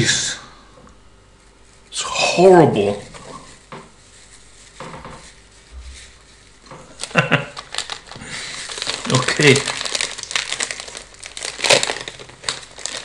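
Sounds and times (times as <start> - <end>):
plastic wrapping crinkling: 2.8 - 13.0.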